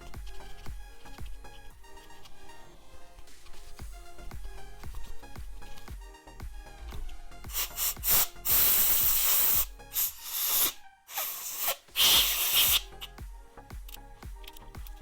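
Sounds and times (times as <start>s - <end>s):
background music: 0.0s - 15.0s
hissing spray bursts: 7.5s - 13.2s.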